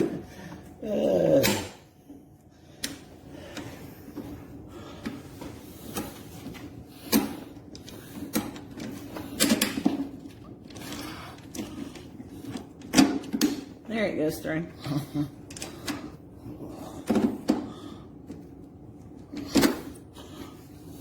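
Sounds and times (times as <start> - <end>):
clicks and knocks of parts: 5.9 - 13.8, 15.4 - 16.1.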